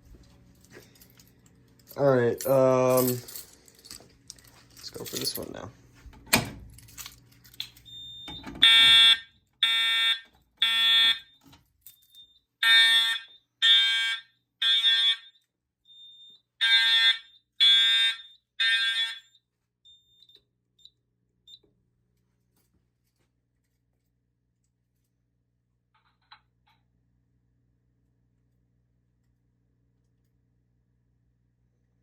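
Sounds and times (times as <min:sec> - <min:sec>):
fire alarm horn blasts: 0:07.9 - 0:11.4, 0:12.3 - 0:20.4.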